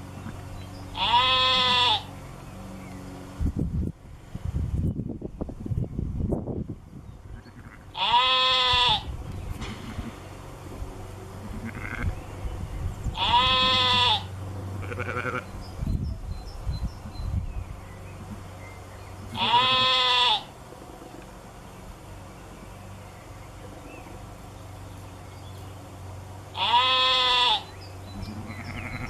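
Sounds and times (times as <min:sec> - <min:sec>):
animal bleating: 0:00.2 - 0:02.1, 0:07.3 - 0:09.1, 0:11.4 - 0:12.2, 0:13.1 - 0:15.5, 0:19.2 - 0:20.5, 0:26.5 - 0:29.0.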